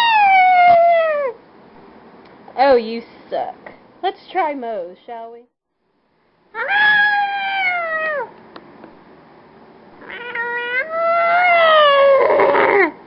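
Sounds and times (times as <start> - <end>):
meow-like wails: 0.0 - 1.4, 6.6 - 8.3, 10.0 - 13.0.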